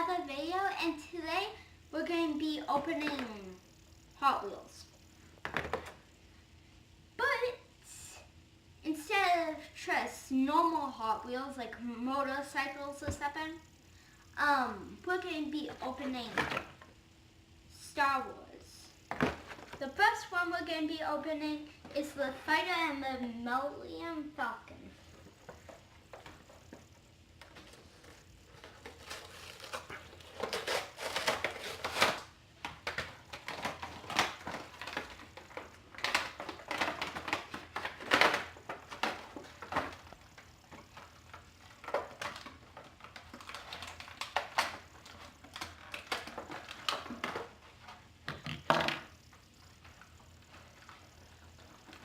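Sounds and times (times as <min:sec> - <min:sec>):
packaging tearing and crinkling: 0:28.6 - 0:39.8.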